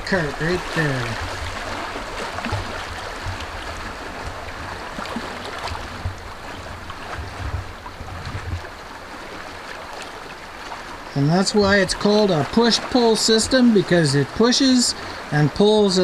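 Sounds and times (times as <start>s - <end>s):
wind buffeting microphone: 0.0s - 9.4s.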